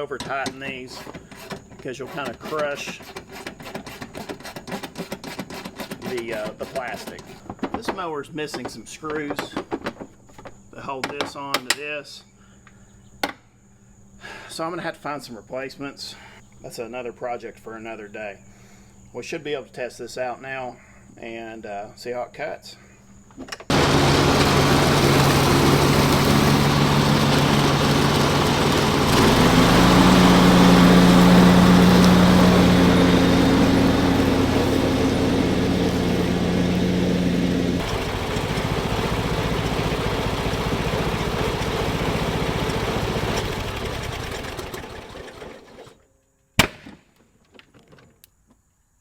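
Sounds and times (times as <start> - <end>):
riding lawn mower engine running: 23.7 - 46.0.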